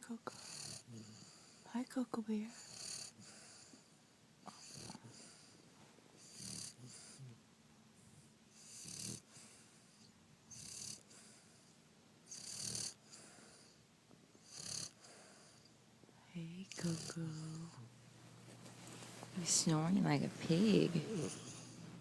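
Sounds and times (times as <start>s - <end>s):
dog snoring raspily: 0.2s - 1.6s, 2.5s - 3.8s, 4.5s - 5.5s, 6.2s - 7.3s, 8.5s - 9.7s, 10.5s - 11.6s, 12.3s - 13.8s, 14.4s - 15.7s, 16.7s - 17.8s, 20.7s - 21.8s.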